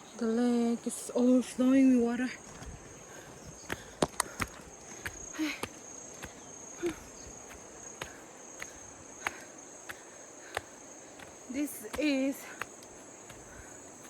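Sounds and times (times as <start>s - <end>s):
insects droning: 0.0s - 14.0s
sharp clicking steps: 3.6s - 13.7s.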